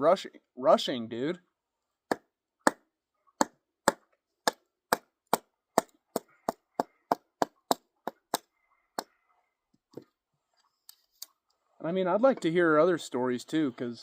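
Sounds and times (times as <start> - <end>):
blade chopping wood: 3.4 - 9.1.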